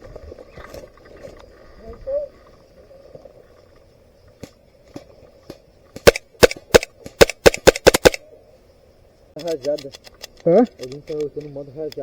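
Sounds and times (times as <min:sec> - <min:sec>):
faint distant gunshots: 0:05.4 - 0:08.2
loud sharp airsoft shots: 0:06.0 - 0:08.2.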